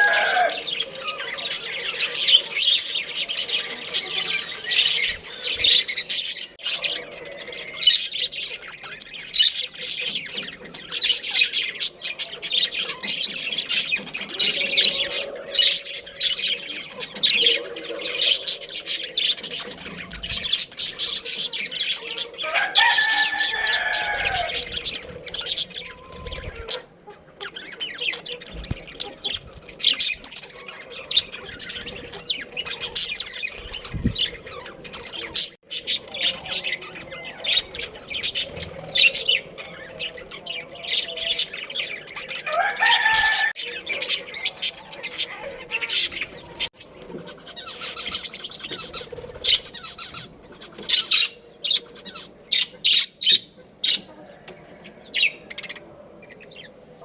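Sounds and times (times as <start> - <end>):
budgerigars chirping: 0.0 - 54.1
wings flapping: 22.6 - 26.8, 45.9 - 50.2.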